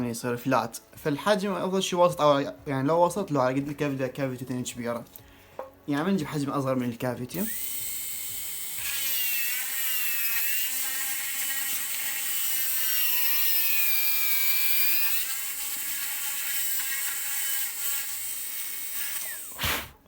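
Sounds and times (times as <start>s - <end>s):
dental drill whine: 7.4s - 20.0s.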